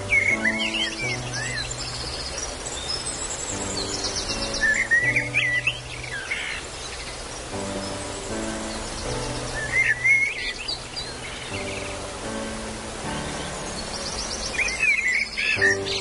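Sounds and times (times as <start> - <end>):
falling water rushing: 0.0 - 16.0
soft piano music: 0.0 - 16.0
songbirds chirping: 0.0 - 16.0.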